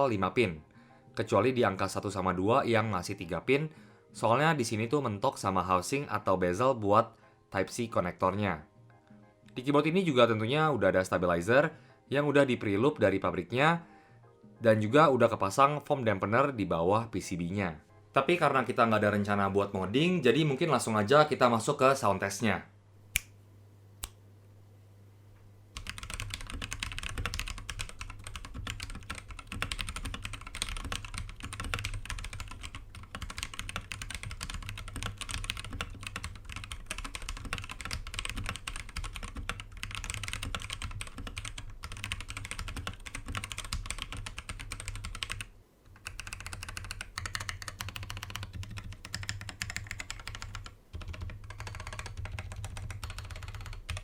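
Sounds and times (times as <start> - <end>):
mechanical keyboard typing: 25.8 - 54.0.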